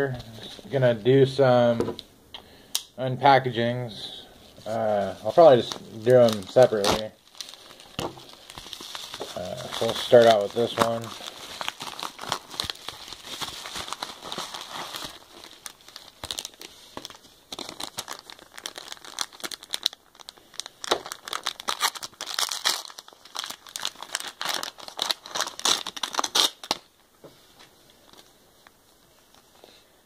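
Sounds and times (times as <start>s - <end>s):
packaging crinkling: 4.5s - 27.0s
packaging tearing: 4.7s - 26.9s.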